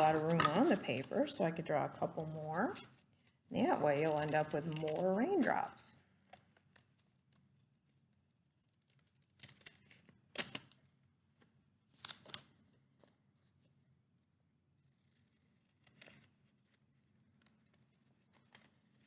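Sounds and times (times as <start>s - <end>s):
scissors cutting paper: 3.6s - 5.7s.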